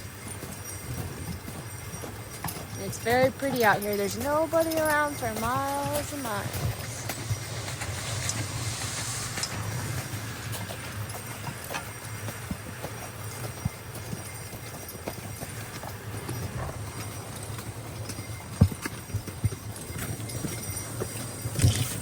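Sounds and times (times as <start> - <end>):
horse hoofbeats: 0.0 - 22.0
steady low rumble: 6.1 - 11.7.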